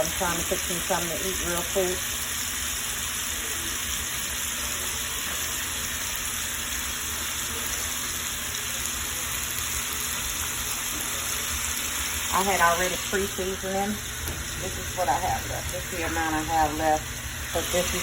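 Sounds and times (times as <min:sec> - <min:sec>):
chicken sizzling in oil: 0:00.0 - 0:18.0
steady low hum: 0:11.7 - 0:18.0.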